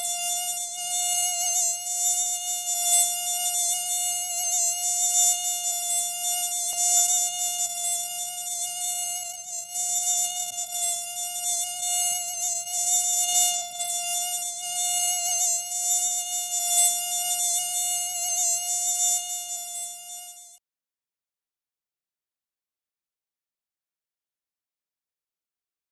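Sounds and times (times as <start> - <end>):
mosquito whine: 0.0 - 20.6.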